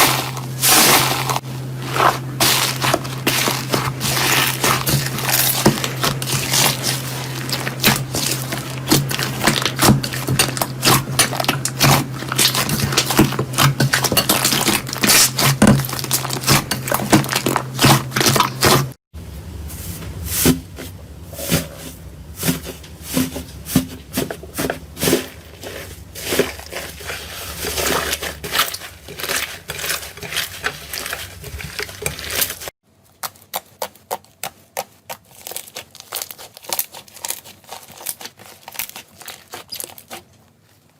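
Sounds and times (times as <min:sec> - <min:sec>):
steady low hum: 0:00.0 - 0:32.8
slime crackling and popping: 0:35.3 - 0:40.3.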